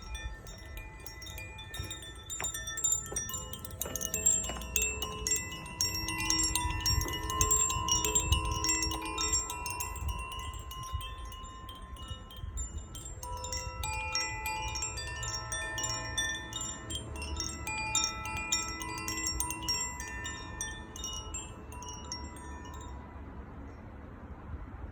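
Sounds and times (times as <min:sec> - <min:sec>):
chime rods ringing: 0:00.0 - 0:23.0.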